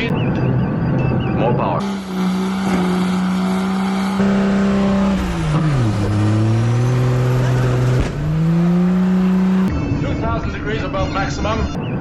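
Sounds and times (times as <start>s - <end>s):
car engine at full throttle: 1.8s - 9.8s.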